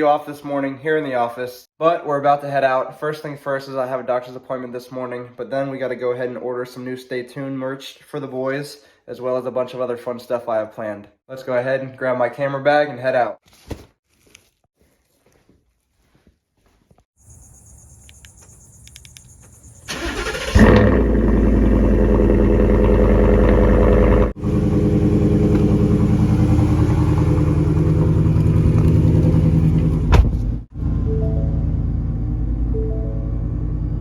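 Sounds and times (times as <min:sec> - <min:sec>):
engine cranking and idling: 0:19.9 - 0:34.0.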